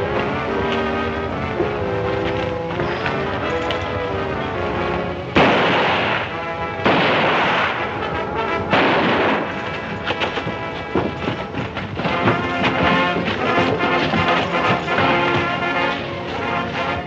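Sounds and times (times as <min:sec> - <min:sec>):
film music: 0:00.0 - 0:17.0
gunshots with ringing tail: 0:05.3 - 0:11.4.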